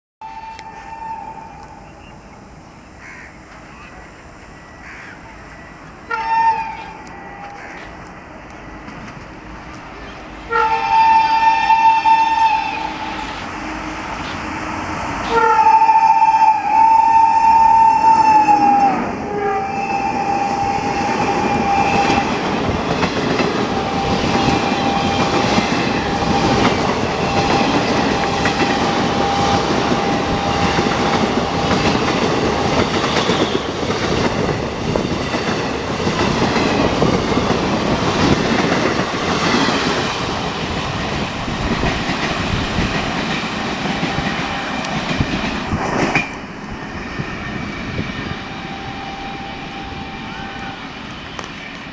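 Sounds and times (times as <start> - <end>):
distant train horn: 0.2 - 2.2, 3.0 - 34.0, 47.4 - 51.9.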